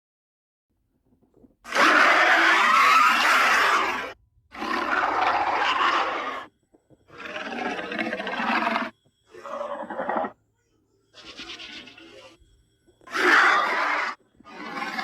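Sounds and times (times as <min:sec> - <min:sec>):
dinosaur roars: 0:01.7 - 0:06.5, 0:07.1 - 0:10.4, 0:13.1 - 0:15.0.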